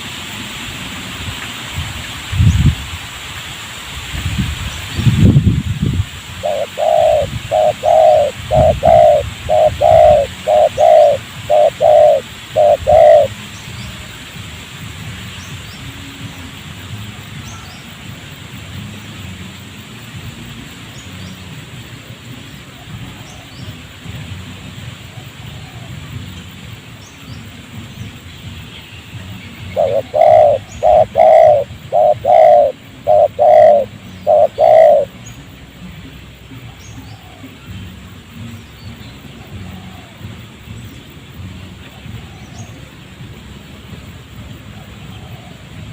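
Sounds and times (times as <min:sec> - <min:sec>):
dove cooing: 0:06.4 - 0:13.3, 0:29.7 - 0:35.2
small birds chirping: 0:06.4 - 0:14.2, 0:25.0 - 0:35.8.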